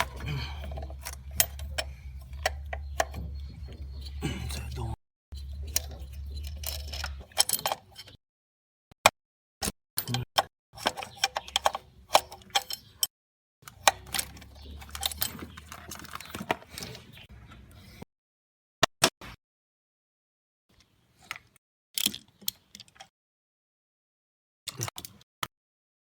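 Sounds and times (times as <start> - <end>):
metal tools clinking: 0.0 - 8.2, 10.8 - 13.1, 13.7 - 17.0.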